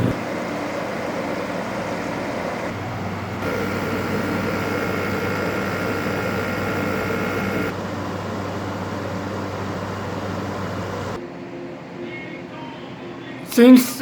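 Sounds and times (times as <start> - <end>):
high steady whine: 0.0 - 11.2
air conditioner fan whir: 0.0 - 14.0.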